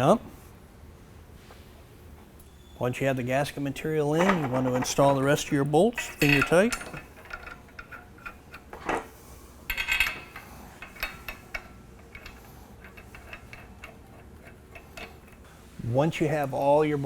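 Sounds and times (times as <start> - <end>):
metal bolts and nuts clinking: 3.5 - 15.4.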